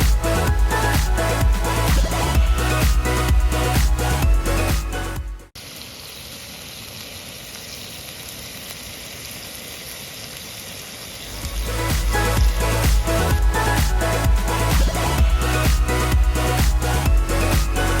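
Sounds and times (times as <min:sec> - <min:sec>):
dance music: 0:00.0 - 0:05.5, 0:11.4 - 0:18.0
steady hiss: 0:05.5 - 0:13.3.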